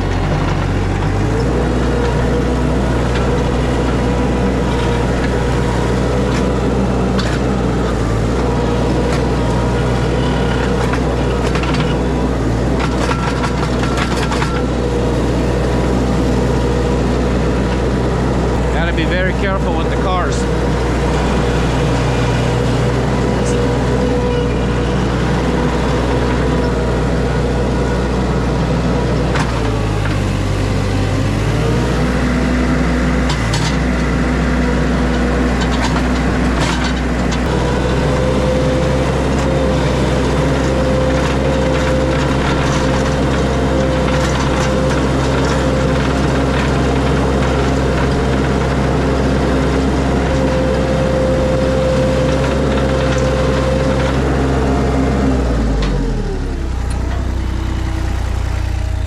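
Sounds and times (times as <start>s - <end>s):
hydraulic whine: 0.0s - 59.0s
skid steer engine running: 0.0s - 59.0s.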